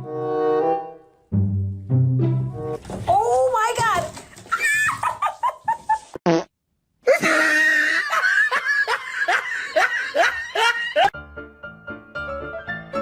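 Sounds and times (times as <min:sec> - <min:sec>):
person laughing: 0:04.8 - 0:06.4, 0:07.1 - 0:11.1.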